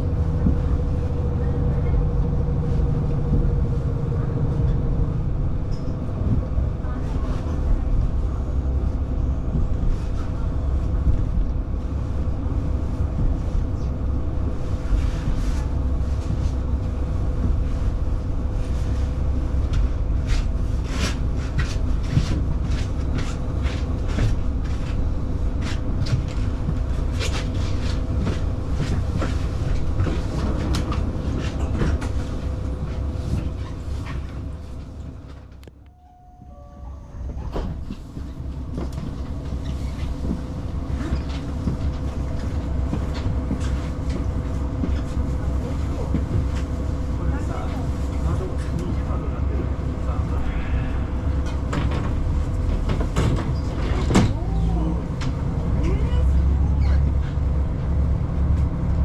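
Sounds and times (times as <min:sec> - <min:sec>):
diesel train rumbling: 0:00.0 - 0:59.0.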